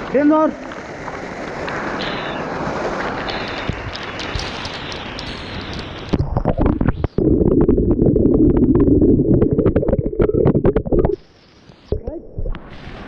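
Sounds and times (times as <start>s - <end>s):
falling water hiss: 0.0s - 7.7s, 12.6s - 13.0s
muffled rumble of water on microphone: 2.7s - 13.0s.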